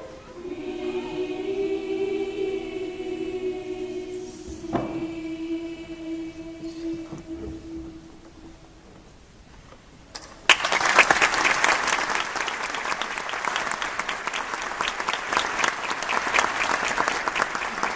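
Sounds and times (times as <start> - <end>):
audience applause: 10.5 - 17.9.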